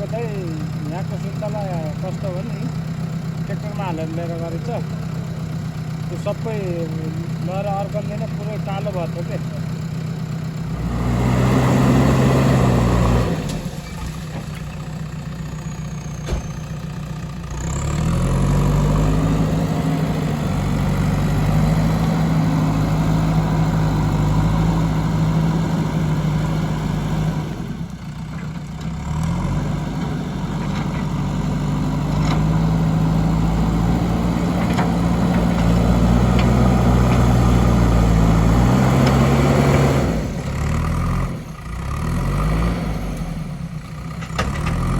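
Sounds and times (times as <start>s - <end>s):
diesel engine revving: 0.0s - 44.9s.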